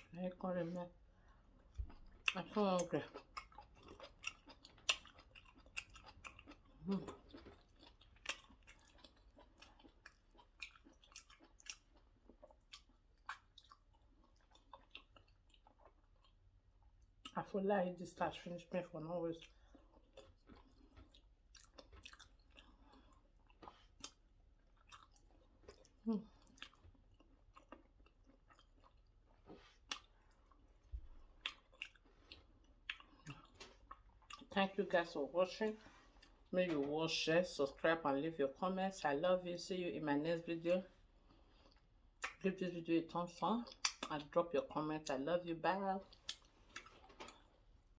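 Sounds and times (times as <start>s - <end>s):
mouth chewing wet smacks: 1.6s - 16.4s, 19.4s - 34.6s, 43.7s - 44.2s, 46.1s - 47.5s
wet lip smacks and mouth clicks: 43.7s - 44.1s, 46.2s - 47.5s.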